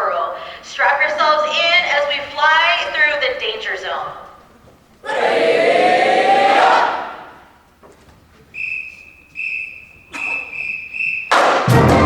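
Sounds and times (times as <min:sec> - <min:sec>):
group of voices shouting: 0:05.0 - 0:07.4
whistle blasts: 0:08.5 - 0:12.0.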